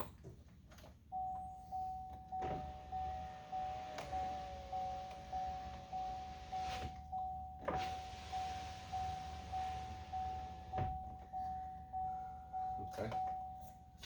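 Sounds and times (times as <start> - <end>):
warning chime dinging: 1.1 - 7.6, 8.3 - 14.0
power window motor whine: 2.0 - 11.4.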